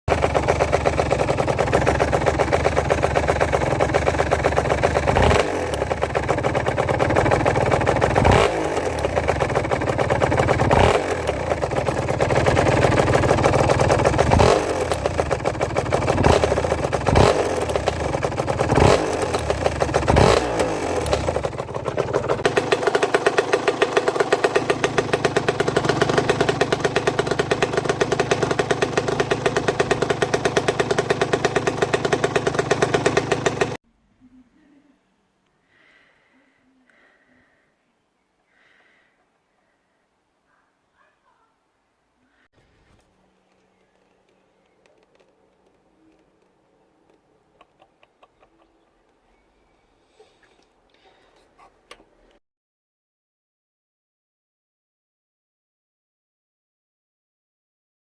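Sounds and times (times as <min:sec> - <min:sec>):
engine knocking noise: 0:00.1 - 0:33.8
two-stroke engine revving: 0:00.1 - 0:33.8.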